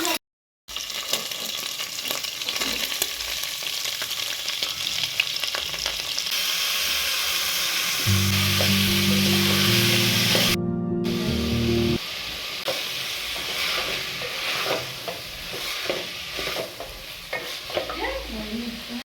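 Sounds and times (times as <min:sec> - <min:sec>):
food sizzling in a pan: 0:00.0 - 0:11.2, 0:11.8 - 0:19.0
low music notes: 0:08.1 - 0:12.0
utensil scraping a pan: 0:13.4 - 0:18.0.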